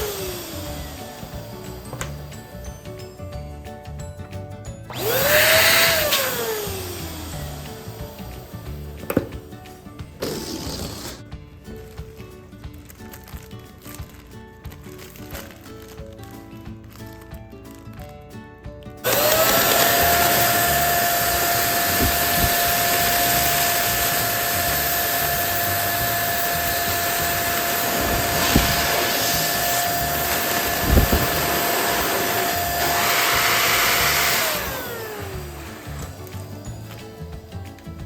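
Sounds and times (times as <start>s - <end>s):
balloon inflator whining: 0.0s - 2.7s, 4.9s - 9.4s, 10.2s - 11.3s, 19.0s - 37.5s
rush of air: 27.3s - 35.2s.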